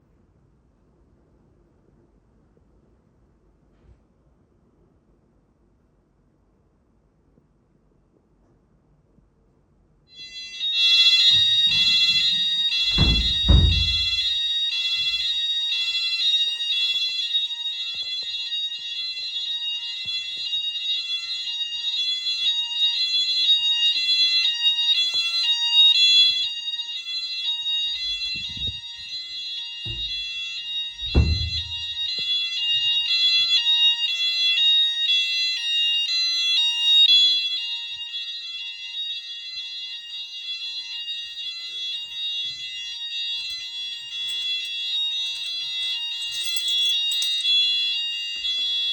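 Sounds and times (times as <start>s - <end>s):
fire alarm high-pitched tone: 10.1s - 48.9s
dull thumps: 11.2s - 14.4s, 29.9s - 30.3s, 31.0s - 32.1s.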